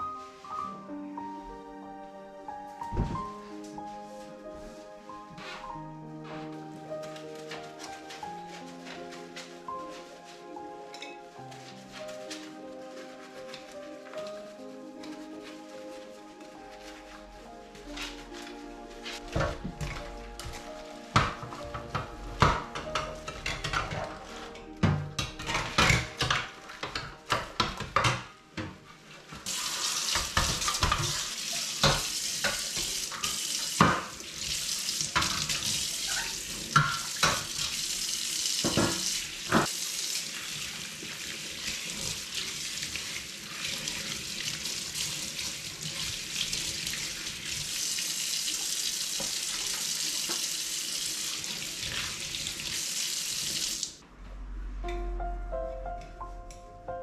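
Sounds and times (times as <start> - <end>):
dishes and utensils clinking: 10.8 - 12.5, 19.2 - 34.2, 35.1 - 37.7, 38.6 - 39.7
tap water running into sink: 29.4 - 54.0.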